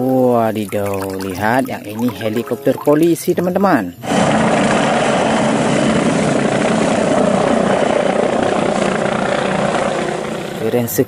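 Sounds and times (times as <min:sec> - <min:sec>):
helicopter rotor and engine: 0:04.0 - 0:11.0.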